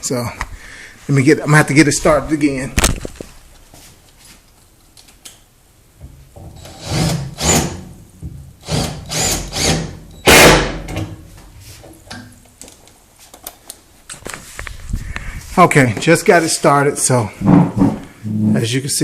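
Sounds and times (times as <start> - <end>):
impact driver running: 8.6 - 10.8.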